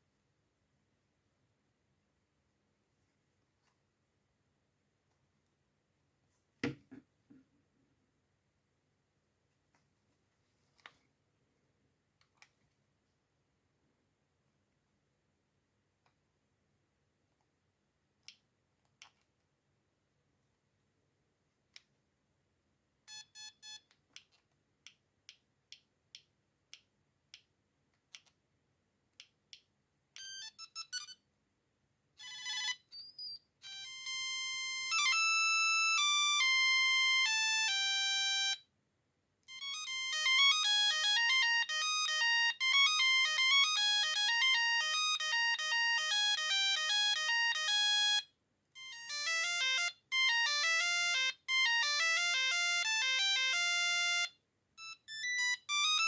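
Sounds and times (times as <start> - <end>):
mobile phone short beeps: 30.2 - 31.2, 32.2 - 34.7
monophonic ringtone melodies: 39.5 - 48.2, 48.8 - 56.0.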